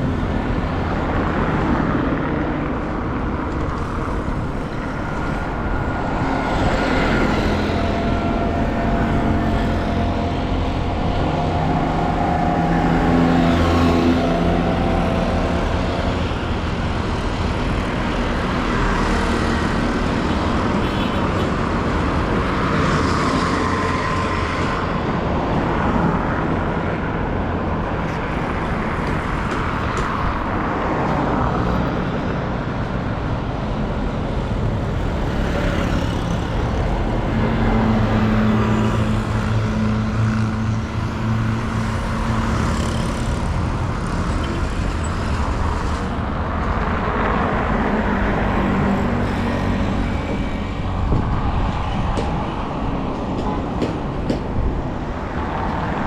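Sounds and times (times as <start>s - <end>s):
street traffic: 0.0s - 56.0s
vehicles passing by: 0.0s - 56.0s.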